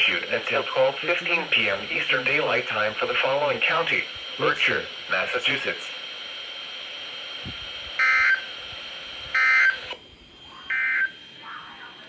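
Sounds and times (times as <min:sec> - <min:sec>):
buzzy digital data bursts: 0:00.0 - 0:06.0, 0:07.9 - 0:08.6, 0:09.2 - 0:12.0
receiver hiss: 0:00.0 - 0:12.0.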